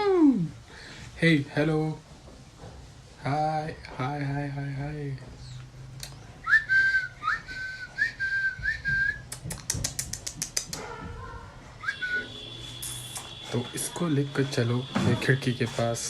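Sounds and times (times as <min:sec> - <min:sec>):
person whistling sliding notes: 0:06.5 - 0:09.3, 0:11.8 - 0:13.2
run of sharp clicks: 0:09.3 - 0:10.9.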